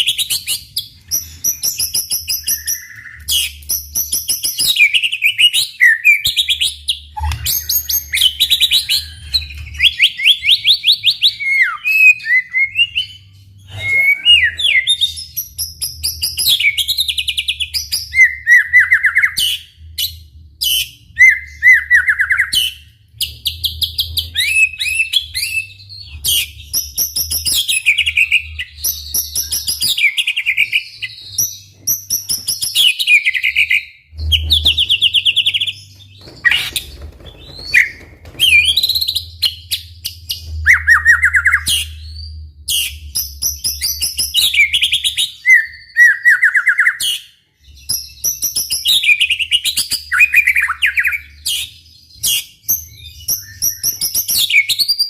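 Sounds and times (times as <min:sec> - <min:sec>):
songbird singing: 0:00.0 - 0:19.8.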